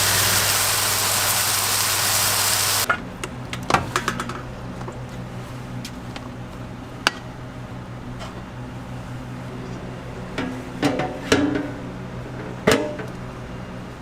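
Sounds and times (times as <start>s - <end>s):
loud cooking hiss: 0.0s - 2.9s.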